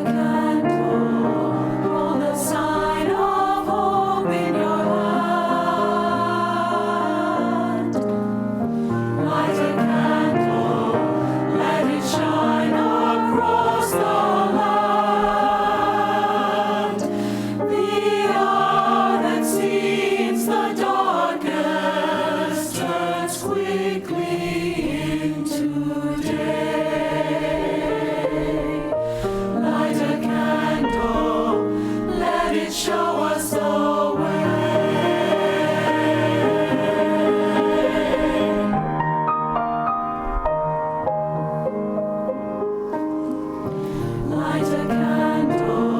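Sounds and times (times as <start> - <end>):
choir singing with accompaniment: 0.0 - 39.0, 43.2 - 45.9.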